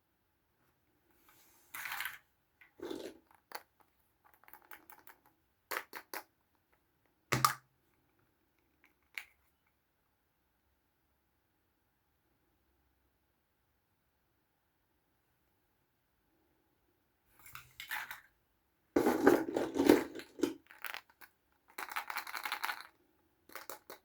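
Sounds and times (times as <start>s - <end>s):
plastic toys rustling: 1.3s - 3.7s, 17.4s - 18.3s, 19.0s - 24.0s
plastic toys clicking and tapping: 3.3s - 6.3s, 19.0s - 24.0s.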